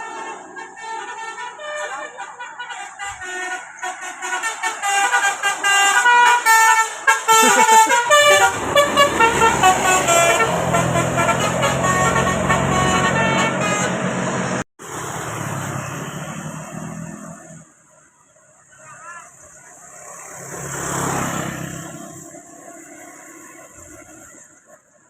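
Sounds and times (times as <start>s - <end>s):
bus horn playing a tune: 0.0s - 14.6s
bus engine rumbling: 0.0s - 25.0s.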